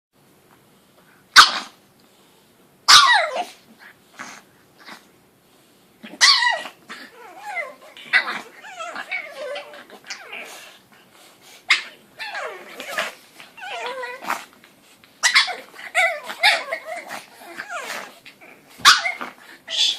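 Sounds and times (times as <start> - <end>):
puppies whiny cries: 2.9 - 3.6, 6.1 - 10.6, 11.7 - 14.5, 15.2 - 18.2, 18.8 - 19.9
puppies growling: 6.0 - 19.9
puppies barking and yipping: 15.2 - 18.2, 18.8 - 19.9.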